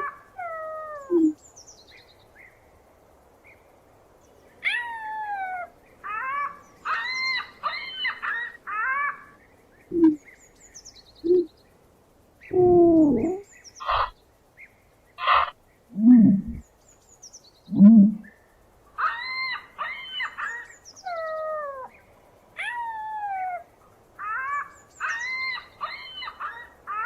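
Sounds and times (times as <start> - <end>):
ostriches calling: 0.0 - 1.4, 12.5 - 14.2, 15.2 - 16.6, 17.7 - 18.3
short chirping calls: 0.0 - 1.8, 9.8 - 11.6, 12.4 - 14.2.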